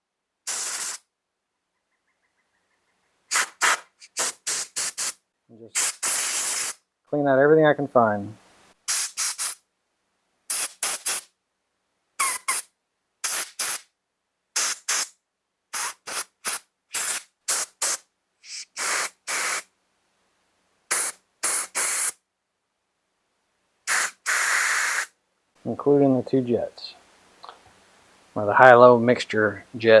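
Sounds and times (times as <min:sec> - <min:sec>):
compressed air blow gun puffs: 0:00.5 - 0:01.0, 0:03.3 - 0:05.2, 0:05.8 - 0:06.8, 0:08.9 - 0:09.6, 0:10.5 - 0:11.3, 0:13.2 - 0:13.8, 0:14.6 - 0:15.1, 0:15.8 - 0:19.7, 0:20.9 - 0:22.2, 0:23.9 - 0:25.1.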